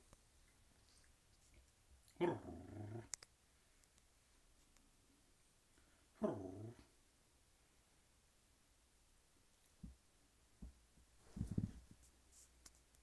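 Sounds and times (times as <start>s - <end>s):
dog growly vocalisations: 2.2s - 3.1s, 6.2s - 6.9s.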